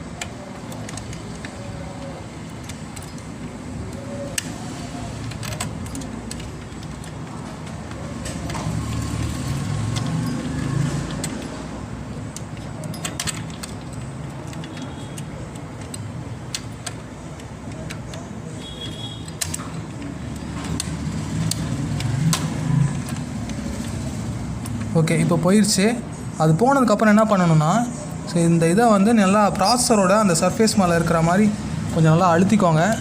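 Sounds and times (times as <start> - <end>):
plastic clicks and rattles: 0.0 - 4.5, 11.0 - 24.9.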